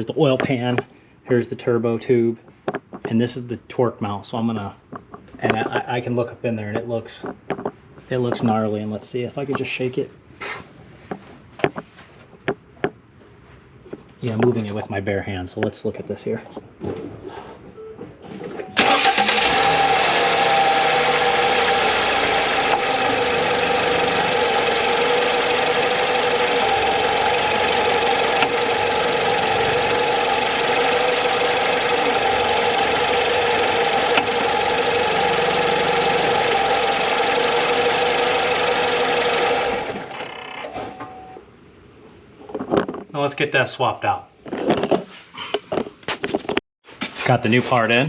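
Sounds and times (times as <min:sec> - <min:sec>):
motor running loudly: 0:19.2 - 0:40.3.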